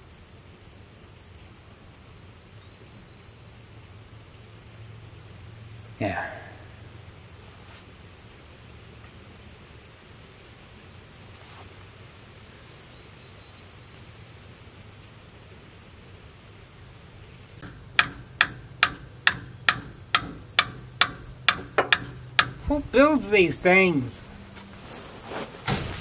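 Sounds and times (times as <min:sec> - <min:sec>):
crickets trilling: 0:00.0 - 0:26.0
sharp ringing metal strikes: 0:06.0 - 0:06.7, 0:17.6 - 0:24.1.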